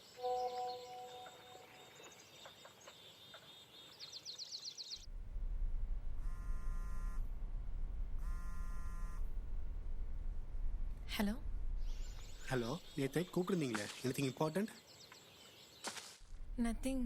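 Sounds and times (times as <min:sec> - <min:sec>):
birds chirping: 0:00.0 - 0:05.1, 0:11.8 - 0:16.0
steady low hum: 0:05.0 - 0:13.2, 0:16.2 - 0:17.0
phone ringing buzzy tone: 0:06.2 - 0:07.3, 0:08.2 - 0:09.4.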